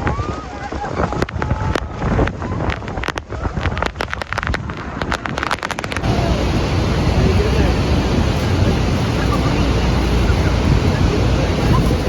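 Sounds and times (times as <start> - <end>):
sharp crackles: 0.0 - 6.1
wind buffeting microphone: 0.0 - 12.0
waterfall rushing: 5.3 - 12.0.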